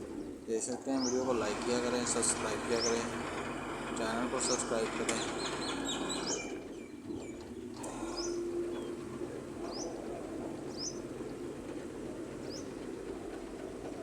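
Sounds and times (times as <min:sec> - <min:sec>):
low background hum: 0:00.0 - 0:14.0
small bird chirping: 0:05.2 - 0:07.4.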